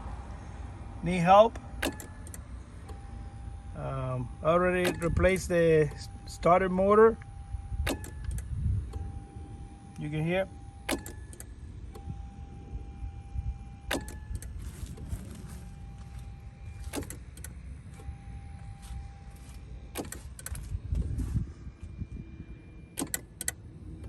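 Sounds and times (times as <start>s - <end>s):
low rumble: 11.5s - 24.0s
starter clicking: 13.9s - 18.8s, 19.4s - 21.1s, 23.0s - 23.6s.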